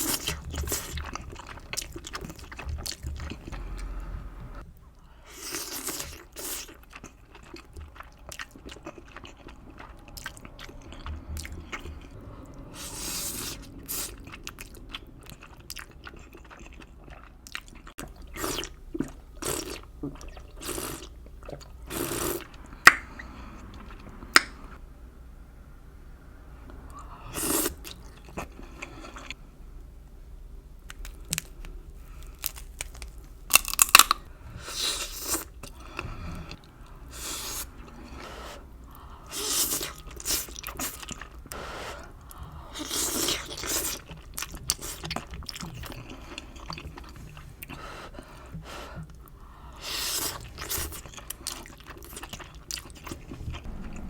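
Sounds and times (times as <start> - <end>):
person chewing and crunching food: 0.0 - 4.6, 5.3 - 24.7, 30.8 - 54.0.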